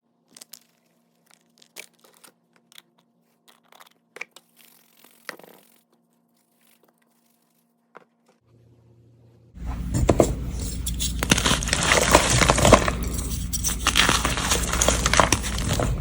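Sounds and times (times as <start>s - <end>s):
chalk crushing and crackling: 0.3s - 8.2s, 9.6s - 16.0s
gritty crunch of chalk: 9.6s - 16.0s.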